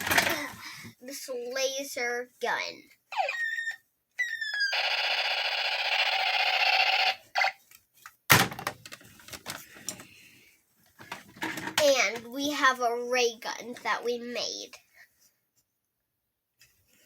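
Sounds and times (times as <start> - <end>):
toy laser gun zaps: 4.4 - 7.6.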